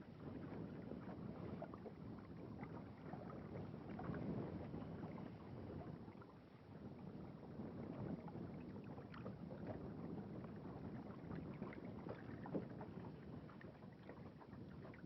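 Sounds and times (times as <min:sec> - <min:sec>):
river water lapping around boat: 0:08.2 - 0:15.0.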